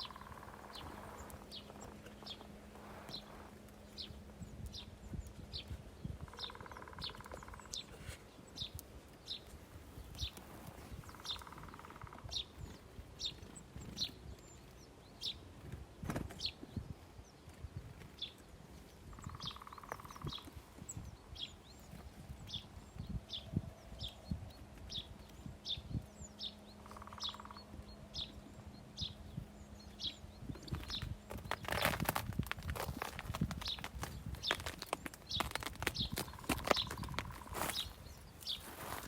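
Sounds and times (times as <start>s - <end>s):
small birds chirping: 0.0s - 39.0s.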